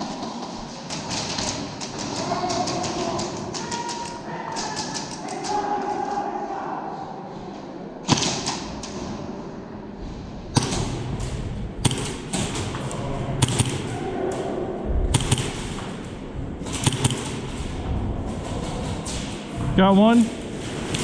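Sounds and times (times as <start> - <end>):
airsoft pistol shots: 10.6 - 12.7, 13.4 - 14.0, 15.1 - 16.0, 16.7 - 17.6.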